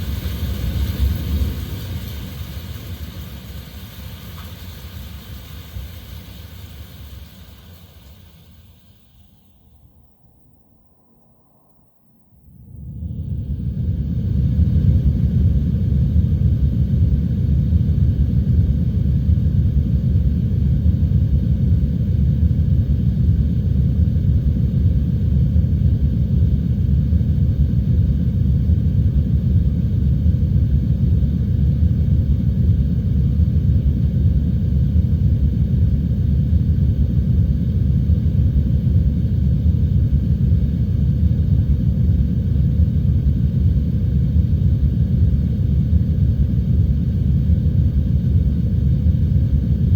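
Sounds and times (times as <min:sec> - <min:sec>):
muffled rain and wind rumble: 0:00.0 - 0:08.5.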